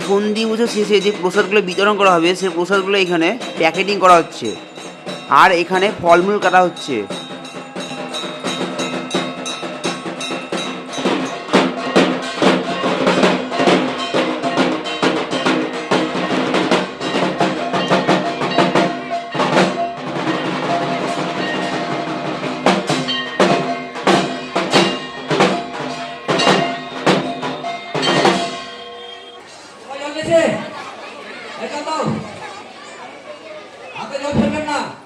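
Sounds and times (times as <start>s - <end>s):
drums beaten with sticks: 0.0s - 29.3s, 32.0s - 32.4s, 34.2s - 34.9s
ringing drone: 2.5s - 15.4s, 23.1s - 29.4s.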